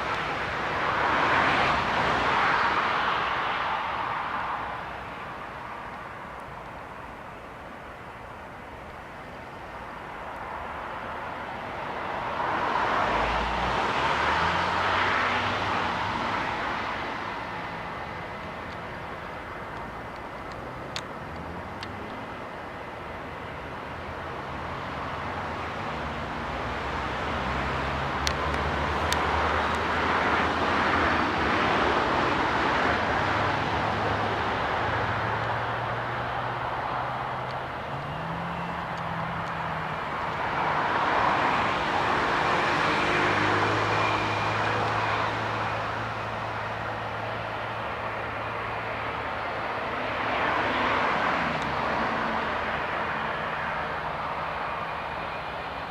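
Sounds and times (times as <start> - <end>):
vehicles passing: 0.0 - 55.9
faint clicks: 19.7 - 22.2.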